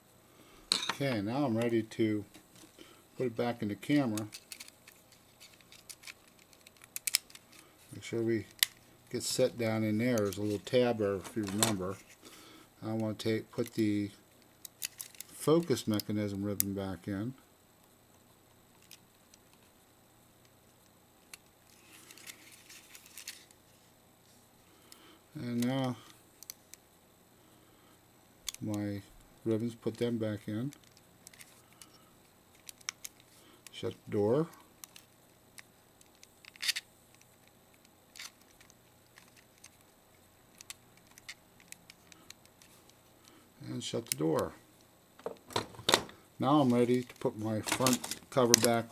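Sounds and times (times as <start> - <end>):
plastic camera parts clicking: 4.2 - 7.5, 32.5 - 33.3, 40.5 - 42.7.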